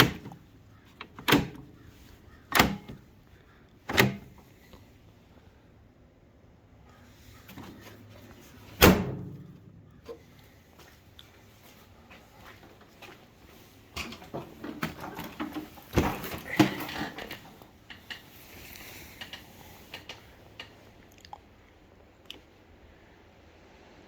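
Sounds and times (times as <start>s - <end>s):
clicks and knocks of mower controls: 0.0s - 1.8s, 2.4s - 3.1s, 3.8s - 4.5s, 13.9s - 20.8s.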